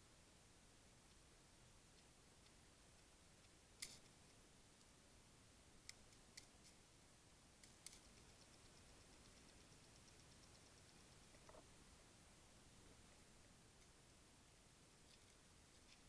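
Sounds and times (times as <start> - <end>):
light ticks: 1.0 - 1.3, 1.9 - 4.9, 5.8 - 6.8, 7.6 - 11.7
faint sharp clicks: 1.9 - 4.9, 5.8 - 6.8, 7.6 - 11.7.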